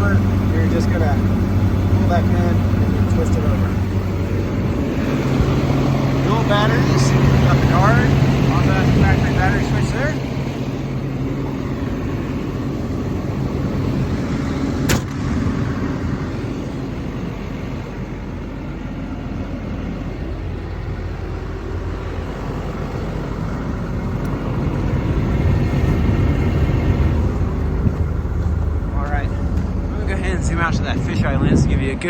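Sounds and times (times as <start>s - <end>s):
excavator diesel engine idling: 0.0s - 32.0s.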